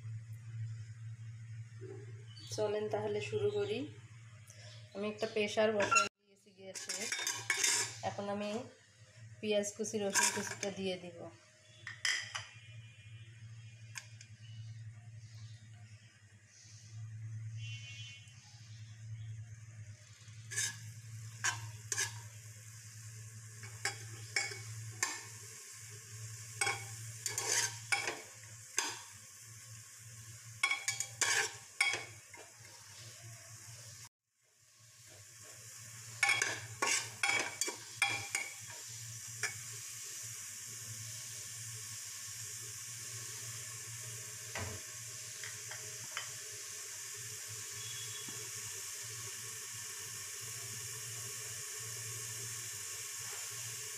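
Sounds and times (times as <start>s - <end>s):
spatula scraping a pan: 5.8s - 6.1s, 6.8s - 8.0s, 10.1s - 10.7s, 20.3s - 22.4s, 26.6s - 29.1s, 30.6s - 33.2s, 36.2s - 39.6s
pan sizzling: 6.8s - 10.8s, 18.8s - 53.9s.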